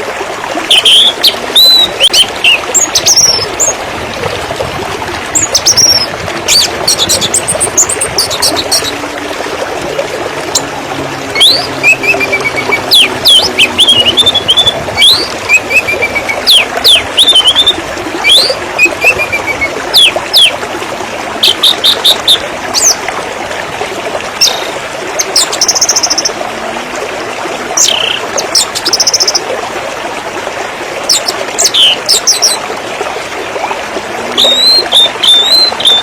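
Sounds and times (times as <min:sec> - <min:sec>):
river water flowing: 0:00.0 - 0:36.0
birds chirping: 0:05.4 - 0:09.1, 0:10.3 - 0:20.6
buzzy bird trills: 0:11.3 - 0:20.5.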